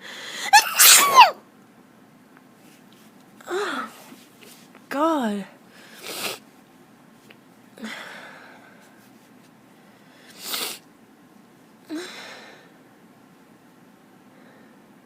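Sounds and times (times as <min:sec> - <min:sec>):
woman sneezing: 0:00.4 - 0:01.4.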